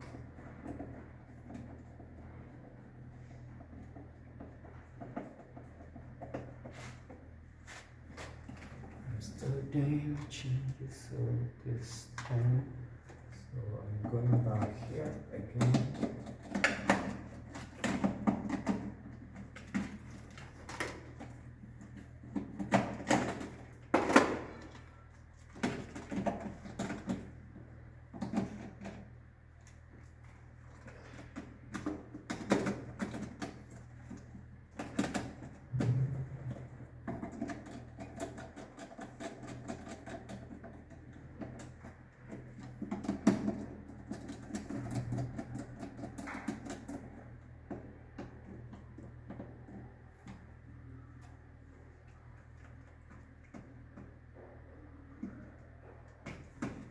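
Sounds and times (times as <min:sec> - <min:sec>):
circuit breakers clicking and knocking: 0:08.4 - 0:51.3.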